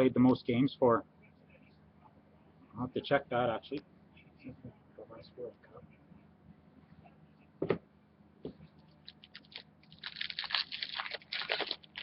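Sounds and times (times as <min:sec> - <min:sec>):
foil wrapper crinkling and tearing: 0:09.0 - 0:12.0.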